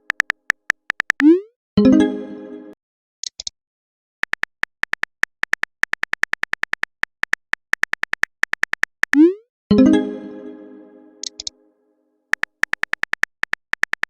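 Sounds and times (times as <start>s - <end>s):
phone keyboard clicking: 0.0s - 1.2s, 4.2s - 9.2s, 12.3s - 14.0s.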